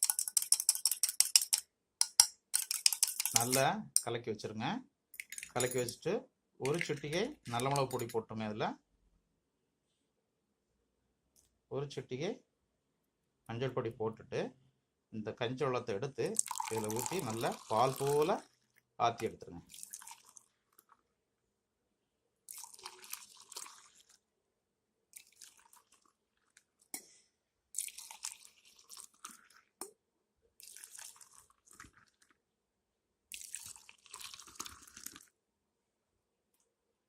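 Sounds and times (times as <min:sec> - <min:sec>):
liquid poured between cups: 0:06.7 - 0:08.1, 0:16.3 - 0:18.9, 0:19.6 - 0:21.1, 0:22.5 - 0:24.3, 0:25.1 - 0:26.9, 0:27.7 - 0:30.0, 0:30.6 - 0:32.4, 0:33.3 - 0:35.4.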